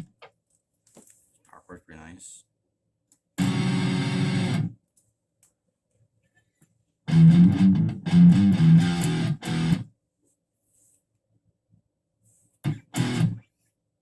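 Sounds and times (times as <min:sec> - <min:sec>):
distorted electric guitar chords: 0:03.4 - 0:04.7, 0:07.1 - 0:09.9, 0:12.7 - 0:13.4.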